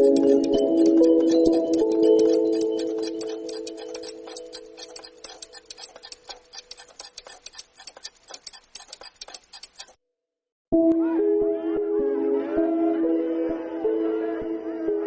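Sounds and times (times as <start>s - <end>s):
background music: 0.0s - 4.8s, 10.8s - 15.0s
rapid clock-like ticking: 0.0s - 10.0s.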